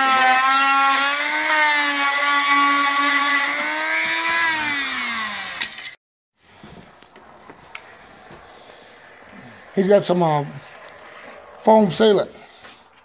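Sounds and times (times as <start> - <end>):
power tool motor whining: 0.0 - 6.0.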